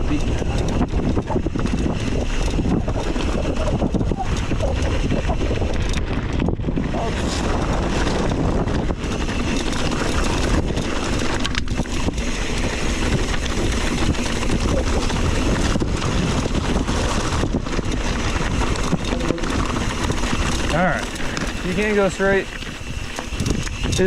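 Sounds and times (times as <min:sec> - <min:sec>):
bike knocking: 0:00.0 - 0:24.0
bike tyres crunching over rocks: 0:00.0 - 0:24.0
wind on microphone: 0:00.0 - 0:24.0.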